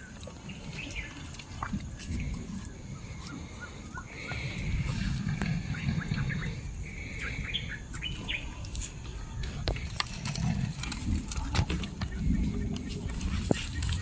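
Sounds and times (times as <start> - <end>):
steady low rumble: 0.0 - 14.0
bird chirps: 5.6 - 8.6.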